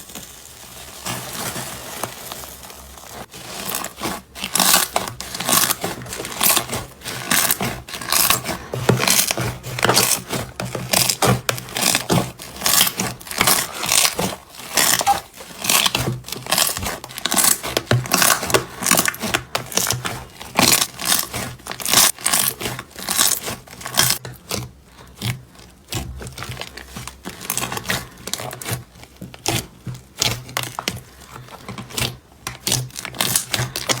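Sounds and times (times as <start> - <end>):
slime crackling and popping: 0.0 - 24.2, 32.0 - 34.0
hands squishing slime: 0.0 - 34.0.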